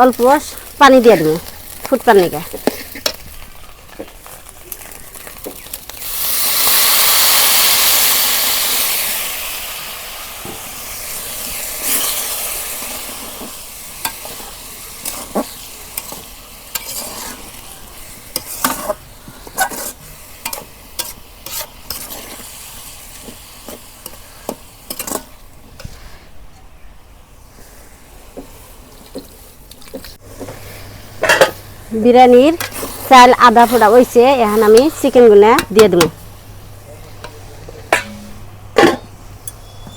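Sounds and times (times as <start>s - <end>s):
water sizzling in hot oil: 0.0s - 25.8s, 29.8s - 36.4s
spoon scraping a pot: 15.0s - 17.6s, 18.3s - 22.4s, 37.2s - 39.9s.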